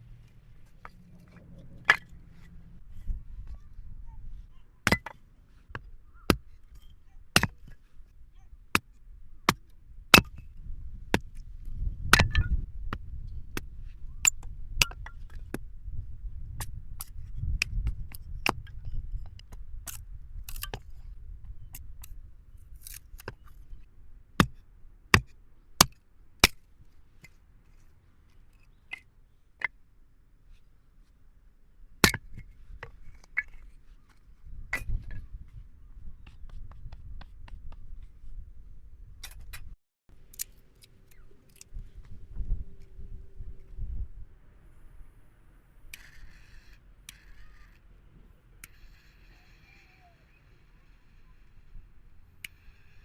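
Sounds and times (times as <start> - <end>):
hatchet chopping wood: 4.9 - 6.5, 7.4 - 7.8, 24.4 - 26.6, 32.0 - 32.4.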